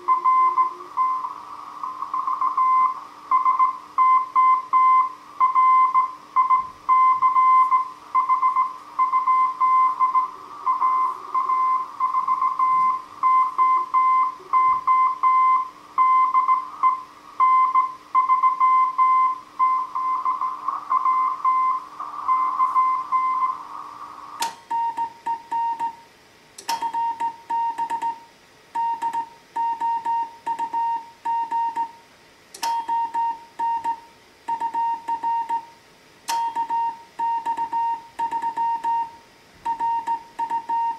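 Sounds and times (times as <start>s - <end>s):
morse code beeping: 0.0s - 23.6s, 24.4s - 26.0s, 26.7s - 28.2s, 28.8s - 32.0s, 32.6s - 35.7s, 36.3s - 40.9s
sharp clicks: 26.6s - 27.0s.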